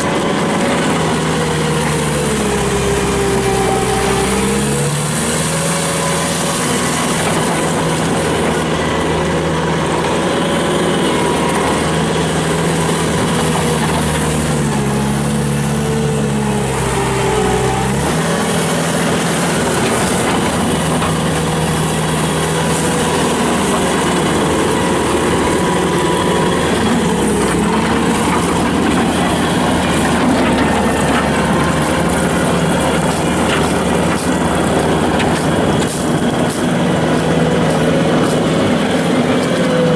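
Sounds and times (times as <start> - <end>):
skid steer diesel engine running: 0.0 - 39.9.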